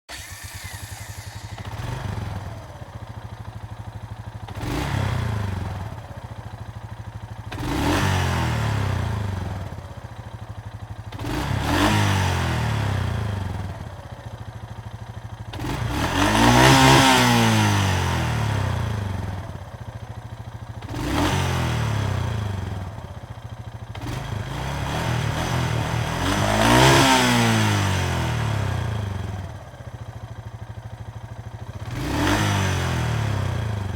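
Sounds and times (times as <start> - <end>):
atv engine idling and revving: 0.1 - 33.9.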